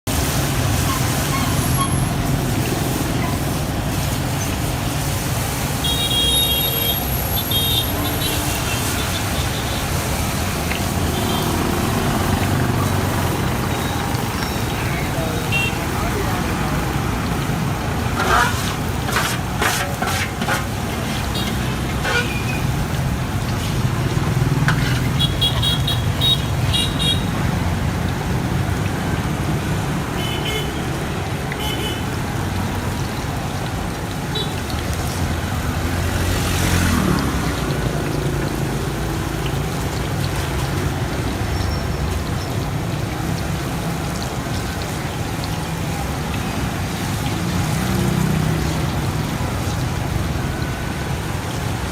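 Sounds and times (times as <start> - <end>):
busy street traffic: 0.0 - 51.9
vehicle horns beeping: 13.7 - 15.9, 21.4 - 22.7, 24.9 - 27.3.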